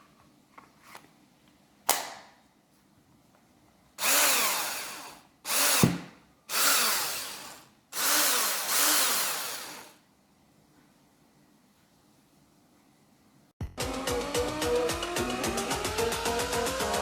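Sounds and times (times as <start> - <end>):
cordless drill motor spinning: 4.0 - 10.0.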